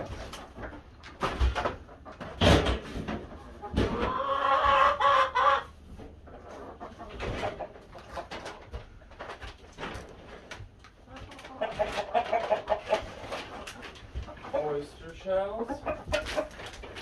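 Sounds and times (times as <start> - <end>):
chickens clucking: 0.0 - 17.0
drawn-out chicken call: 3.4 - 5.8.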